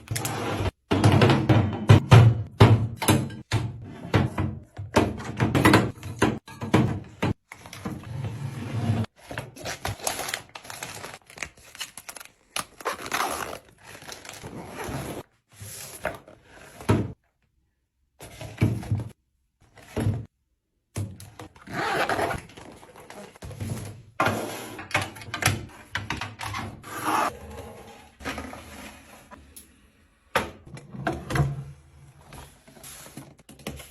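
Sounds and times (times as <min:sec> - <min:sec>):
packaging tearing and crinkling: 0:09.6 - 0:14.4.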